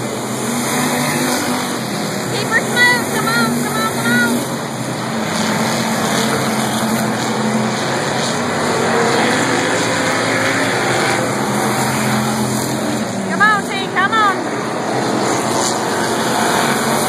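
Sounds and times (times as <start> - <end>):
race car engines droning: 0.0 - 17.0.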